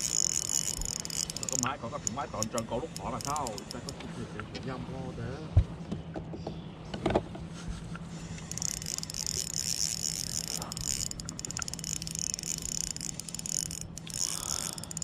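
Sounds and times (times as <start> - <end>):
fishing reel whirring: 0.0 - 4.1, 8.1 - 15.0
low steady hum: 0.0 - 15.0.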